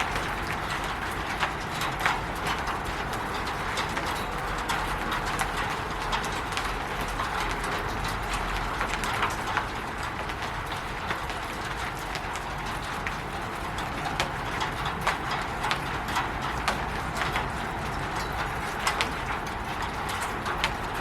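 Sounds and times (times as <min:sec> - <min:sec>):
rain on a roof: 0:00.0 - 0:21.0.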